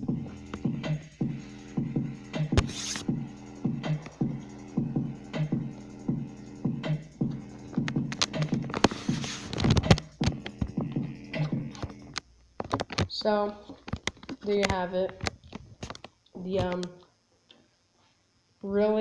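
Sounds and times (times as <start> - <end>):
bass-heavy electronic music: 0.0 - 12.2.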